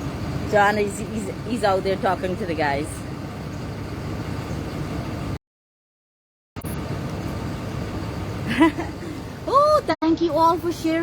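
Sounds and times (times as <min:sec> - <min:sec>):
outdoor background rumble with hiss: 0:00.0 - 0:05.4, 0:06.6 - 0:11.0.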